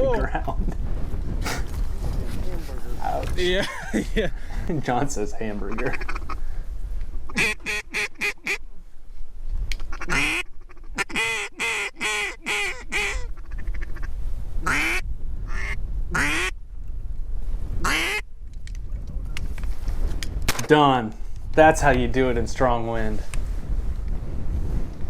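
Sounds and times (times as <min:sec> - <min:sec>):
strong wind on microphone: 0:00.0 - 0:25.0
duck quacking: 0:07.3 - 0:08.6, 0:09.9 - 0:16.5, 0:17.8 - 0:18.2.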